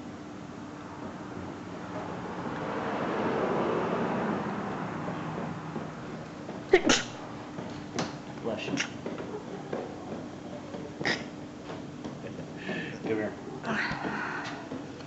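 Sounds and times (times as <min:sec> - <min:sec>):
broad rush of noise: 0:00.0 - 0:07.7
person sneezing: 0:06.7 - 0:07.2, 0:11.0 - 0:11.3.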